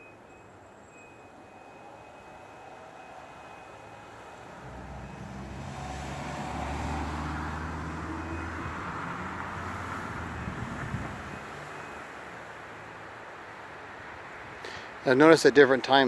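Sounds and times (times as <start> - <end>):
vehicle passing: 1.7 - 12.2.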